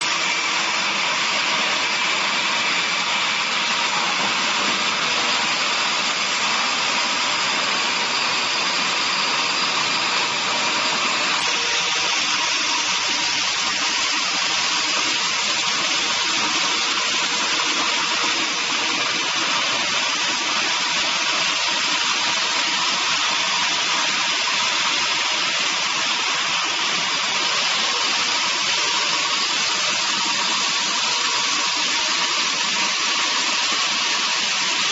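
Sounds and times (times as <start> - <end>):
band saw sawing timber: 1.1 - 18.7.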